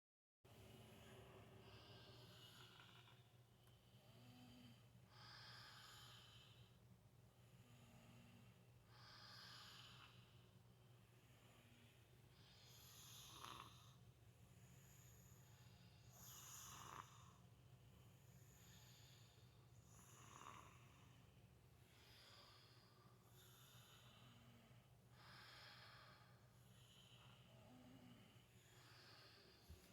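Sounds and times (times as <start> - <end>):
slow breathing and soft snoring: 0.6 - 29.9.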